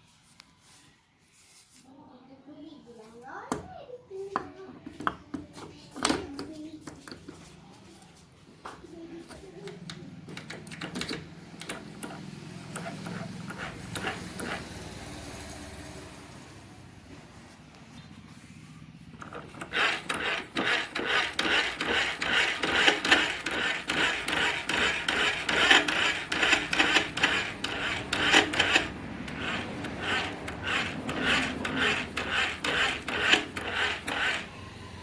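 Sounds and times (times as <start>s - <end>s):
rhythmic rasping strokes: 11.6s - 15.0s, 18.9s - 35.0s.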